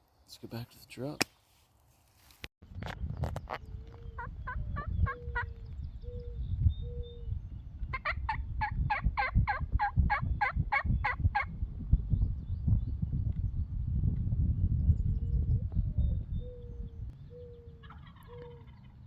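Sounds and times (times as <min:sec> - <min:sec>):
turkey yelping: 0:04.0 - 0:05.5, 0:07.9 - 0:11.5, 0:17.3 - 0:19.0.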